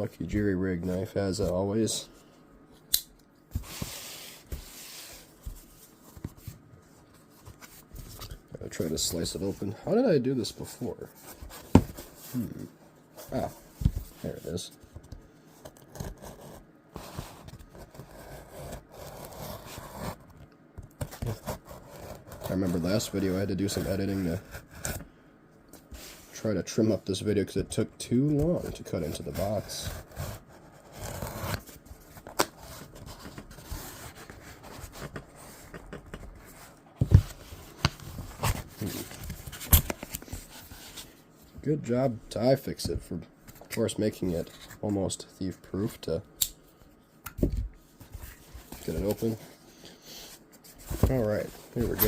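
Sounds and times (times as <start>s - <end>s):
cardboard rustling: 10.4s - 15.2s, 28.3s - 41.2s, 50.6s - 52.0s.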